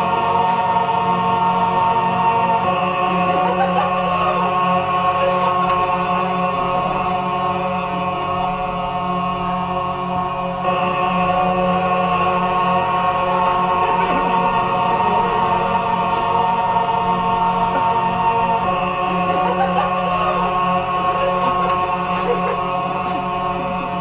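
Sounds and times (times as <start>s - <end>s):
choir-like drone of looped voices: 0.0s - 24.0s.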